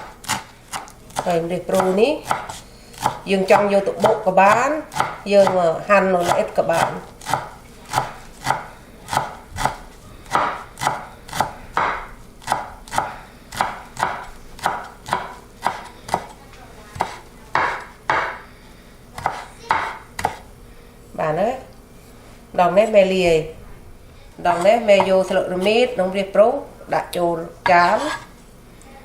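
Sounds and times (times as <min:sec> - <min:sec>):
knife chopping on cutting board: 0:00.0 - 0:05.6, 0:06.2 - 0:18.4, 0:19.2 - 0:20.5.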